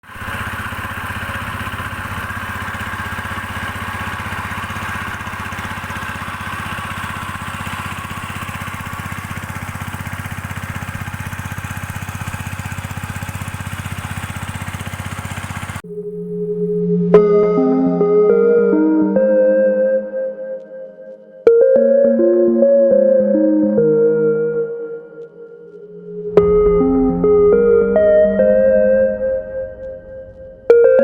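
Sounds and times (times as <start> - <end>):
small engine running: 0.0 - 15.8.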